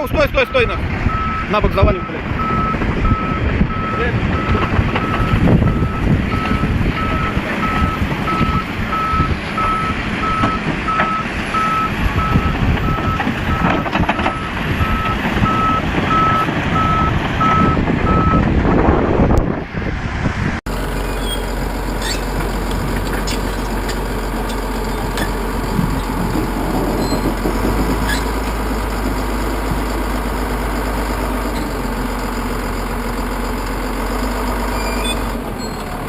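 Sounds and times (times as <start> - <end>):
diesel engine and track noise: 0.0 - 36.0
steady engine hum: 0.0 - 36.0
reversing alarm beeping: 0.4 - 18.4, 24.7 - 27.5, 34.6 - 35.9.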